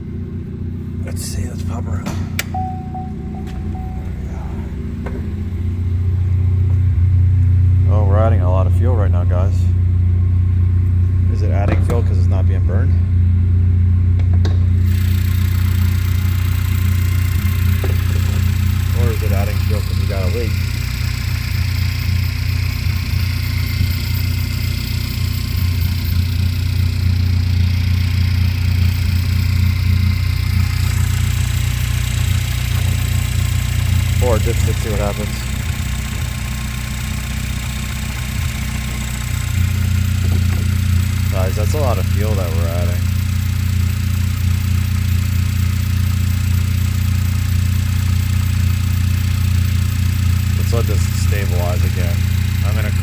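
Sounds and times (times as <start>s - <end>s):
car engine idling rough: 0.0s - 53.0s.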